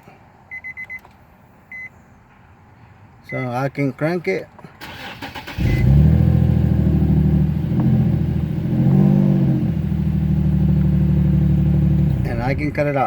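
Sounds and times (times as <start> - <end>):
car engine idling: 4.8 - 8.8, 9.5 - 12.9.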